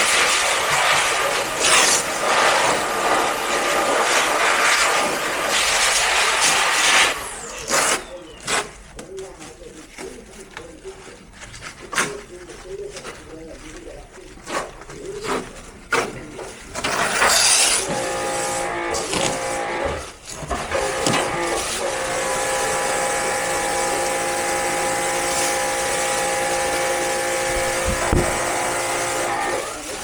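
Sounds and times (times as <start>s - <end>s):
loud burst of hiss: 0.0s - 8.0s, 20.8s - 30.0s.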